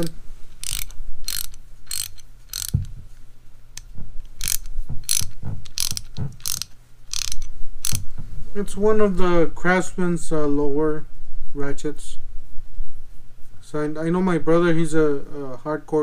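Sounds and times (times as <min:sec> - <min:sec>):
ratchet pawl clicking: 0:00.0 - 0:02.8, 0:04.4 - 0:08.1.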